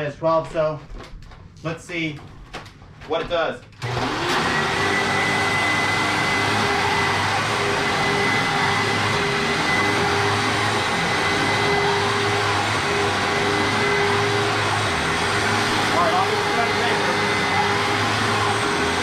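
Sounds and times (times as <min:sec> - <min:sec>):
vacuum cleaner running on carpet: 0:03.8 - 0:19.0.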